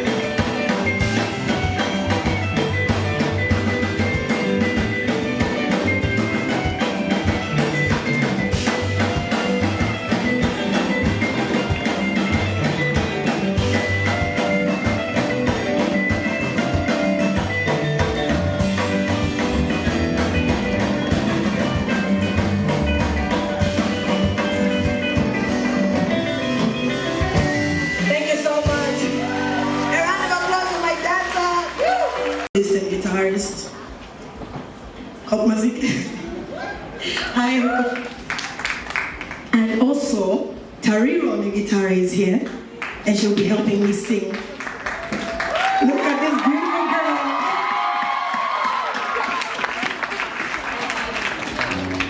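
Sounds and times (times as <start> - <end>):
drum kit steady beat: 0.0 - 32.5
live band playing soul music: 0.0 - 35.2, 49.3 - 52.0.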